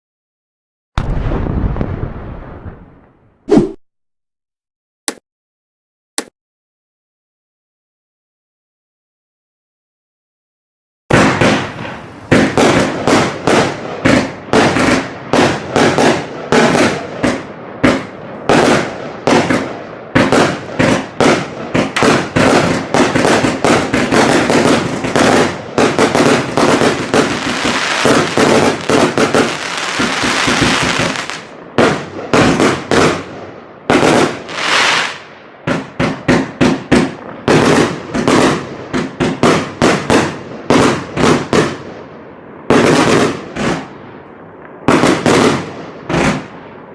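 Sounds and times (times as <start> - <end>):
firework battery shots: 11.1 - 33.3.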